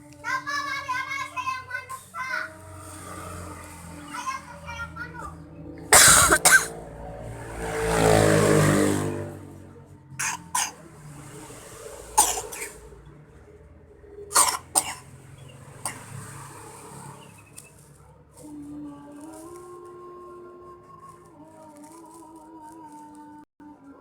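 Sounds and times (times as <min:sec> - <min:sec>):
motor vehicle passing: 0:00.0 - 0:24.0
child coughing: 0:05.9 - 0:06.8, 0:10.2 - 0:10.9, 0:12.2 - 0:12.9, 0:14.3 - 0:15.2, 0:15.8 - 0:16.2.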